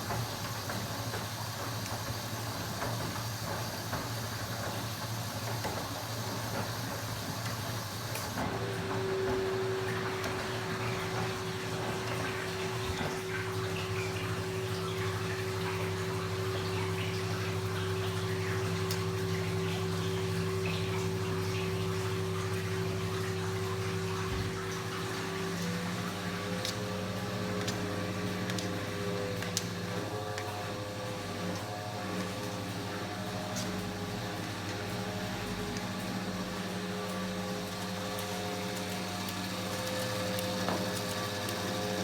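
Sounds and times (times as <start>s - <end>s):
water running in washing machine: 0.0s - 42.0s.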